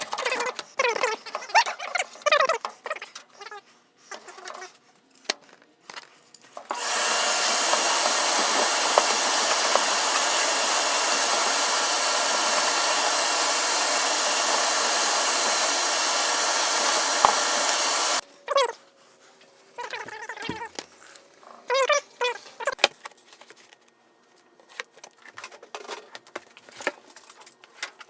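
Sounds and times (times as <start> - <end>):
machine motor rushing: 6.7 - 18.2.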